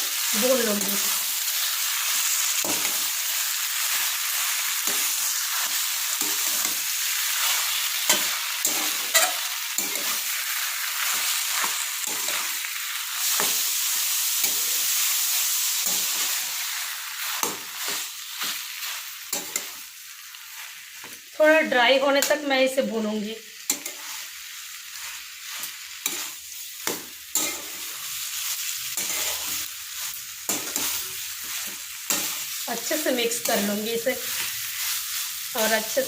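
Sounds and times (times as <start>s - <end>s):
food sizzling in oil: 0.0s - 36.0s
spoon scraping and knocking a pan: 8.0s - 10.2s.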